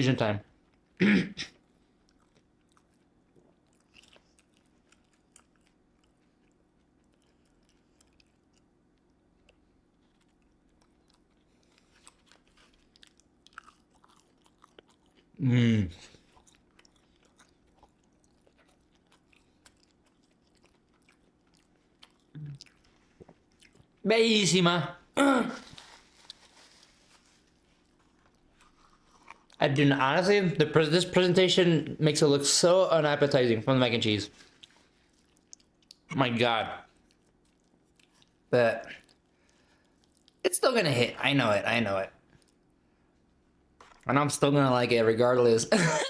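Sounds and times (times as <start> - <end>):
chewing with wet crunches: 1.6 - 15.4, 16.0 - 24.0, 25.7 - 29.6, 34.4 - 36.1, 36.8 - 40.4
person humming: 15.4 - 16.0.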